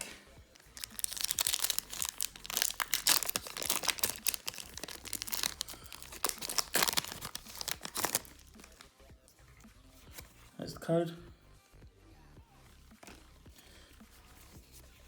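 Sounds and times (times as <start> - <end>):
foil wrapper tearing and crinkling: 0.5 - 8.9.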